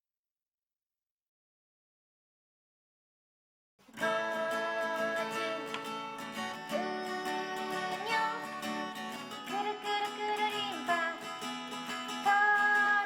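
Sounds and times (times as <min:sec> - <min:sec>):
sliding held melody notes: 0:04.0 - 0:10.7
plucked guitar: 0:04.0 - 0:13.0.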